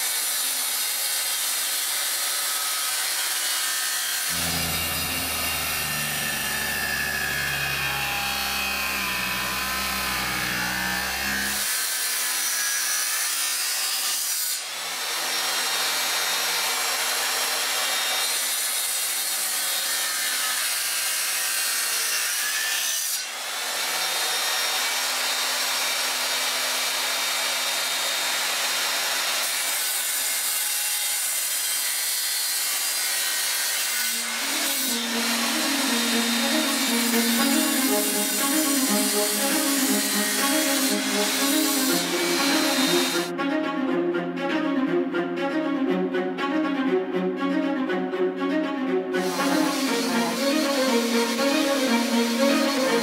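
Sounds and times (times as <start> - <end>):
power tool rasping on wood: 0.0 - 14.1, 31.5 - 43.3
low machine hum: 4.3 - 10.6.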